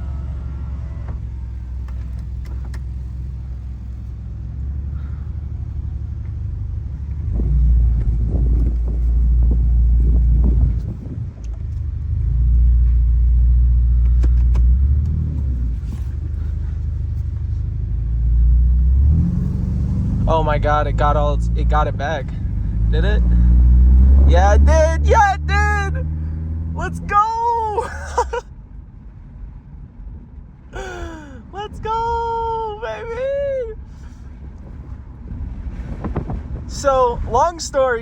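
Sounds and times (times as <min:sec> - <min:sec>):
car engine accelerating: 0:00.0 - 0:28.3.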